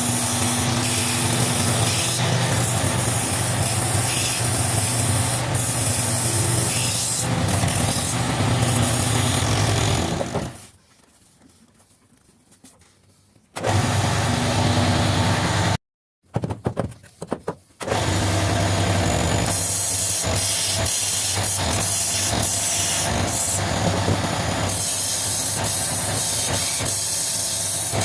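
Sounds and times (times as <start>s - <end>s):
lathe motor hum: 0.0s - 10.6s, 13.6s - 15.8s, 17.9s - 26.5s
chisel scraping spinning wood: 0.0s - 10.7s.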